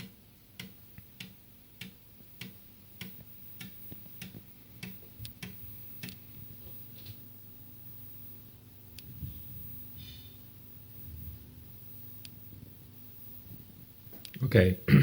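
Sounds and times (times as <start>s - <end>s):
floppy drive ticking: 0.0s - 6.3s.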